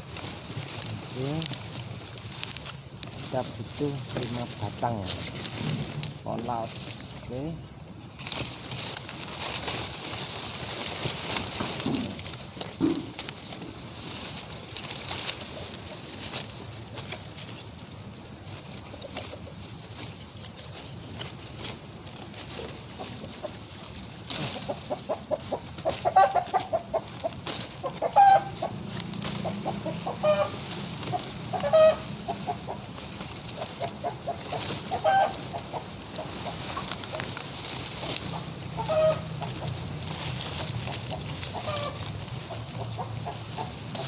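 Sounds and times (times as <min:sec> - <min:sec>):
chickens clucking: 0:00.0 - 0:44.0.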